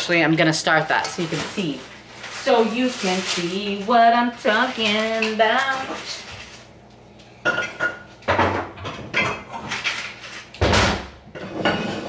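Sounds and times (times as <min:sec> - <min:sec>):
pots and pans clattering: 0:07.4 - 0:12.0.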